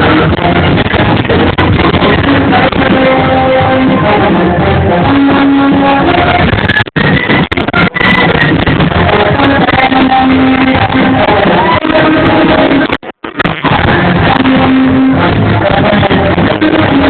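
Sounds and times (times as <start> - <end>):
rock music with singing and guitar: 0.0 - 17.0.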